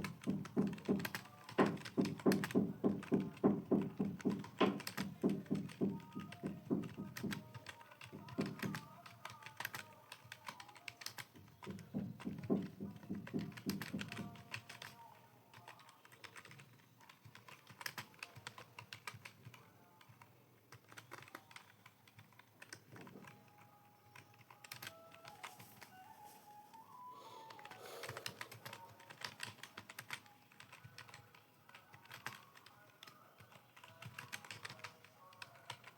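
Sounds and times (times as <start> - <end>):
typing on computer keyboard: 0.0 - 26.1, 26.7 - 35.9.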